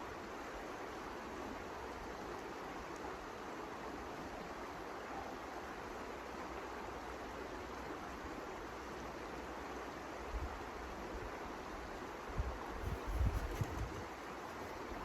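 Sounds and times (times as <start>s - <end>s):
wind gusts buffeting microphone: 12.4s - 15.0s
blizzard wind blowing: 12.8s - 15.0s.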